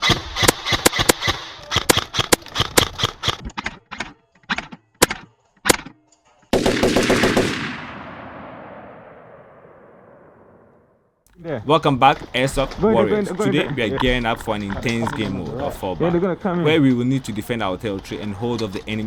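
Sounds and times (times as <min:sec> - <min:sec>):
gunshots: 0:00.0 - 0:03.5, 0:06.5 - 0:10.7.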